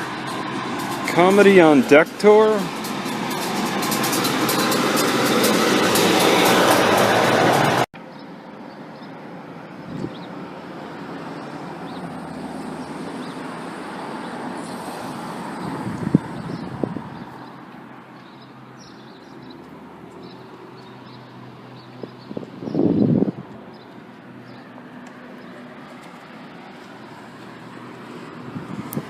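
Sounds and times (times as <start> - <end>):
nearby vehicle rushing past: 0.0 - 7.9
traffic hum: 0.0 - 29.0.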